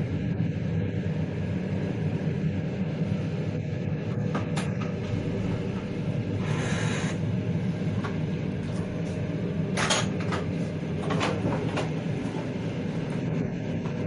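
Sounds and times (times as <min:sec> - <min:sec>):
train wheels rumbling on rails: 0:07.8 - 0:14.0.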